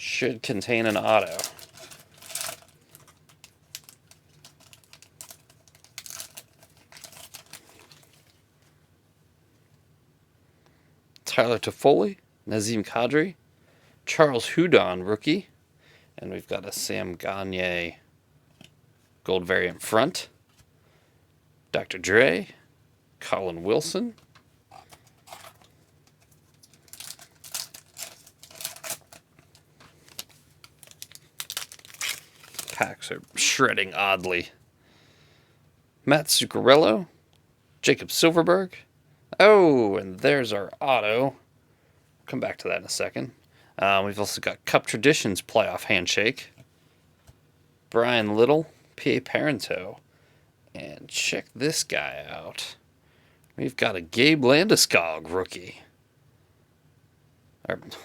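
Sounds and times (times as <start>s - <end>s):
wrapper crinkling and tearing: 0.6s - 8.4s, 24.8s - 34.4s.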